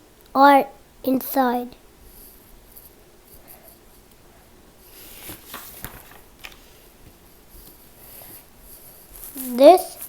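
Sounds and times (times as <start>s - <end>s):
book page turning: 5.0s - 6.7s.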